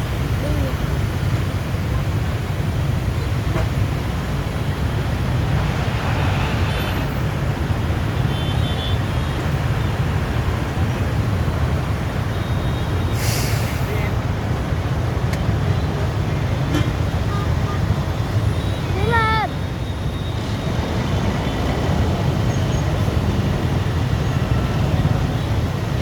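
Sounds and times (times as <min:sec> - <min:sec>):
brief hiss: 0:13.2 - 0:14.1.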